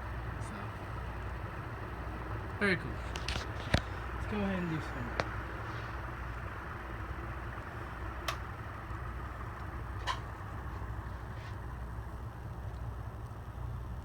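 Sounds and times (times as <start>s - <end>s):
ceiling fan motor hum: 0.0s - 14.0s
faint clicks: 7.6s - 10.9s, 12.5s - 13.4s.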